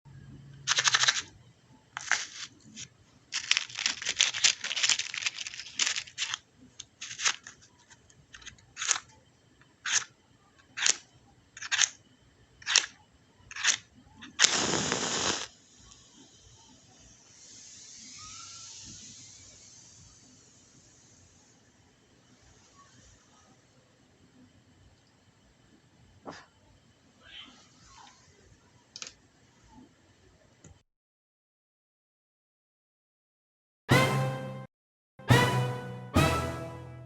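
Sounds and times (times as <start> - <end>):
match scraping on matchbox: 2.0 - 7.6, 13.5 - 15.6
match burning hiss: 13.6 - 21.6.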